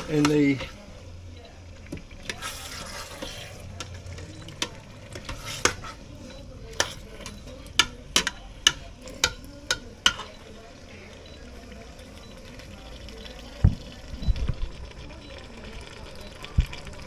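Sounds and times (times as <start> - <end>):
metal utensil knocking on pot: 6.8 - 10.3.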